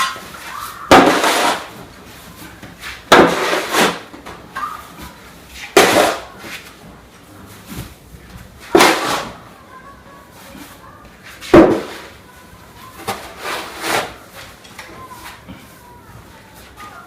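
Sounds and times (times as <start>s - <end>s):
snow shovel scraping snow: 1.0s - 1.7s, 3.2s - 4.0s, 8.8s - 9.4s, 13.2s - 14.2s.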